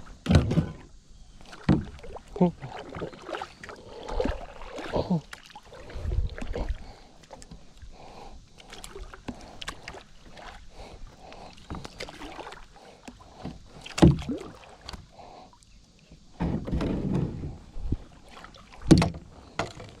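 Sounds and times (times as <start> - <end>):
paddle strokes swishing through water: 0.0 - 15.4, 16.4 - 20.0
sharp knocks on kayak: 13.4 - 14.4, 18.8 - 20.0.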